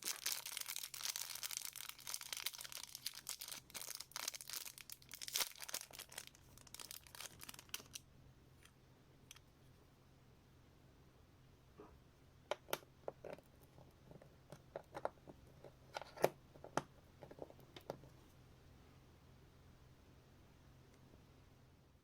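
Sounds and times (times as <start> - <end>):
packaging crinkling: 0.0 - 8.0.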